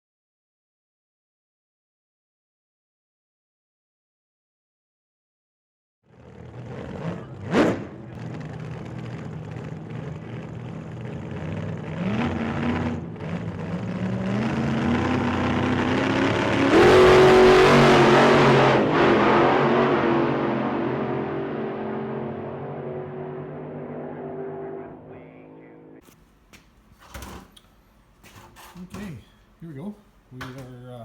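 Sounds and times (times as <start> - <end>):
vehicle engine revving: 6.1 - 26.0.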